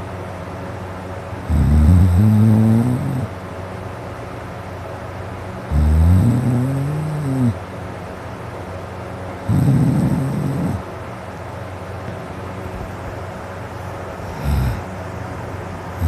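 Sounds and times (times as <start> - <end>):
steady low hum: 0.0 - 16.0
man snoring: 1.5 - 3.3, 5.7 - 7.6, 9.5 - 10.8, 14.2 - 14.9.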